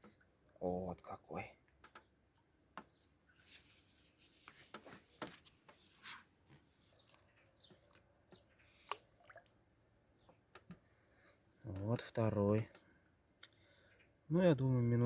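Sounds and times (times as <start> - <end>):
faint rustling: 2.4 - 8.9.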